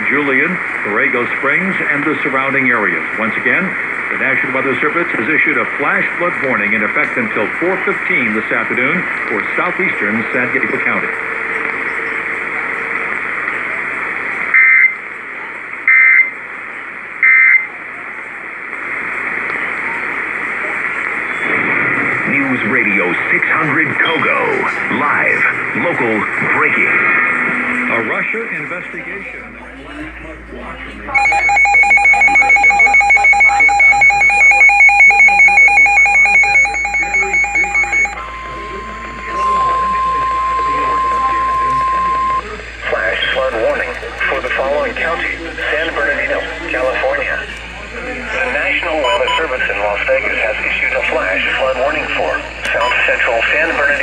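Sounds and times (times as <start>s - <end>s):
radio hiss: 0.0s - 14.9s, 18.6s - 29.0s, 31.1s - 54.0s
harsh digital data bursts: 31.2s - 42.4s
pulsing two-pitch alert warble: 31.2s - 42.5s.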